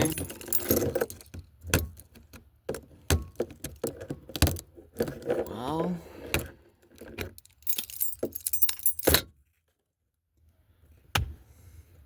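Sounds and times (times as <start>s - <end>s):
keys jangling: 0.0s - 1.3s, 7.3s - 9.2s.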